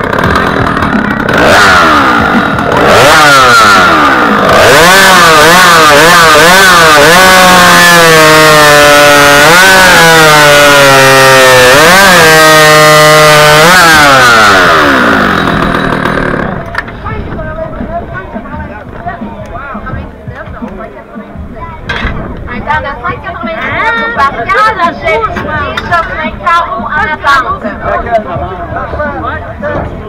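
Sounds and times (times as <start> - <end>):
chainsaw revving and cutting: 0.0 - 16.7.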